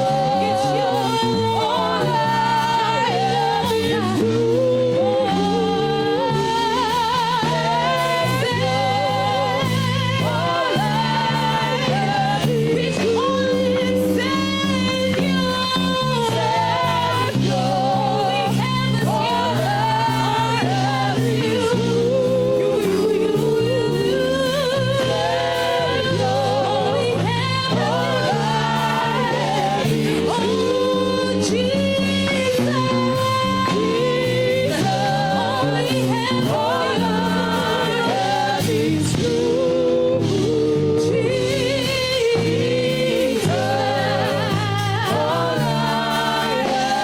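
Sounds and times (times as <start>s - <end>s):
keyboard and bass accompaniment: 0.0s - 47.0s
voices singing gospel: 0.0s - 47.0s.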